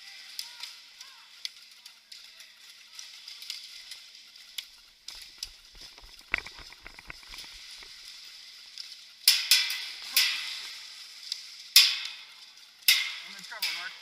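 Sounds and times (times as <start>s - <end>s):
faint crackling clicks: 0.2s - 13.9s
airsoft gun pops: 5.4s - 7.9s.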